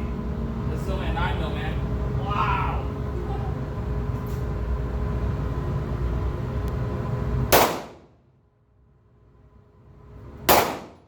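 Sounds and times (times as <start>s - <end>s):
steady low rumble: 0.0s - 11.0s
pistol shots: 7.5s - 8.1s, 10.5s - 11.0s.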